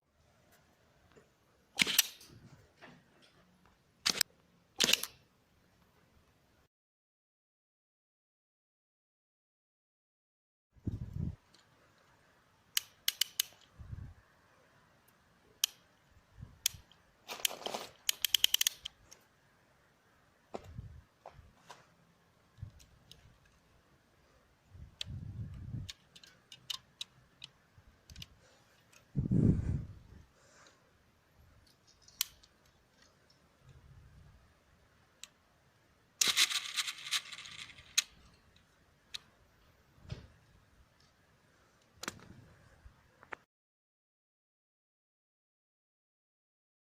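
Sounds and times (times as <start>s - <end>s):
sharp plastic clicks: 1.8s - 2.4s, 4.0s - 5.2s, 12.7s - 13.8s, 15.6s - 15.9s, 16.6s - 19.2s, 25.0s - 29.1s, 31.6s - 33.8s, 36.2s - 39.3s
plastic rattling: 36.2s - 38.1s.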